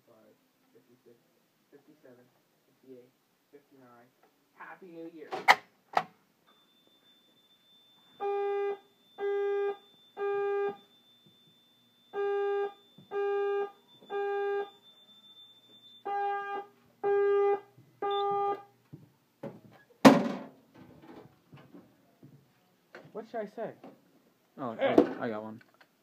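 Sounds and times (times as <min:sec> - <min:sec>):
faint high steady whine: 0:00.0 - 0:24.9
fire alarm horn blasts: 0:06.6 - 0:18.7
loud thump: 0:20.0 - 0:20.5.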